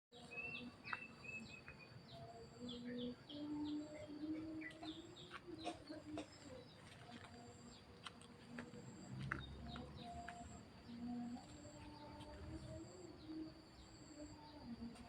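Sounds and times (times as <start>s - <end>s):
birds chirping: 0.1s - 15.0s.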